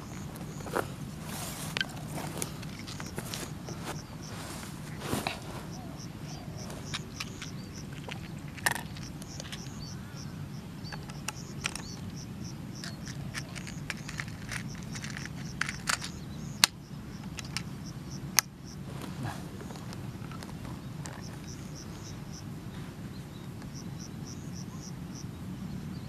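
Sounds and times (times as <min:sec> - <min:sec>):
low steady hum: 0:00.0 - 0:26.0
rhythmic high-pitched chirping: 0:05.7 - 0:18.8
sharp clicks: 0:10.9 - 0:12.2, 0:12.8 - 0:17.7.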